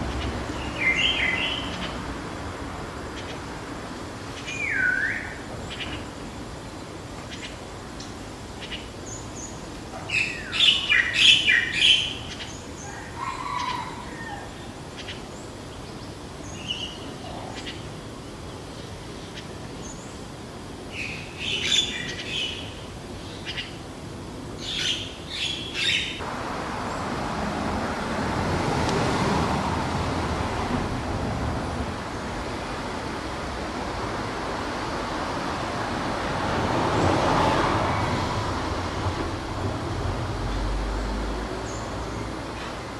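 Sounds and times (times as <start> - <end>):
birds calling: 0.0 - 2.1, 4.3 - 6.3, 7.2 - 20.3, 20.9 - 23.9, 24.6 - 26.2
passing road traffic: 0.0 - 8.8, 25.3 - 42.9.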